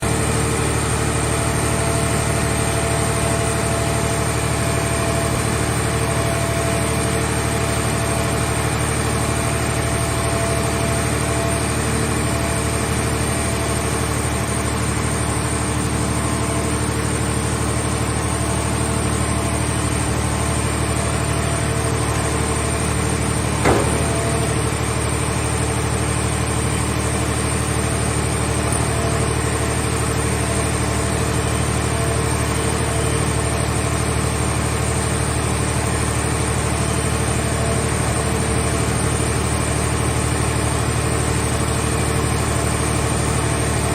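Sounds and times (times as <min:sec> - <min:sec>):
hydraulic machine humming: 0:00.0 - 0:35.2
sharp knock: 0:23.6 - 0:24.7.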